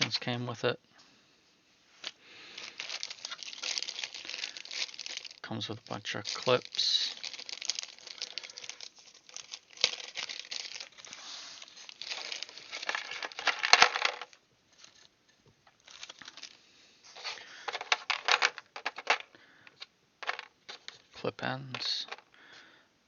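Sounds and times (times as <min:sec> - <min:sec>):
plastic packaging crinkling: 0:02.0 - 0:21.1, 0:21.8 - 0:22.3
small metal parts clinking: 0:12.1 - 0:14.4, 0:17.6 - 0:20.9.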